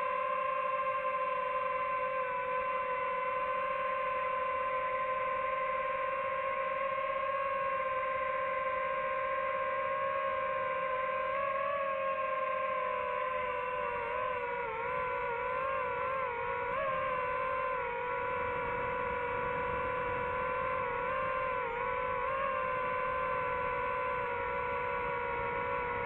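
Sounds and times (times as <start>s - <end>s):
drone propellers whining: 0.0s - 26.0s.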